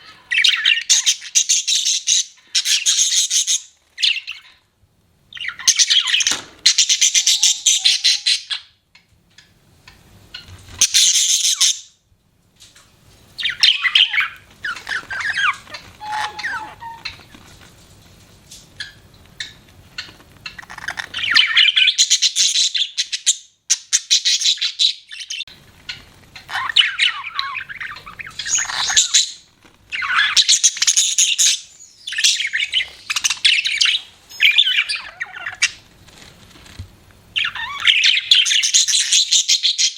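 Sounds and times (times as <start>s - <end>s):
budgerigars chirping: 0.0s - 4.6s, 5.3s - 8.7s, 10.4s - 11.9s, 13.4s - 17.3s, 19.4s - 25.5s, 26.4s - 35.8s, 37.4s - 39.9s.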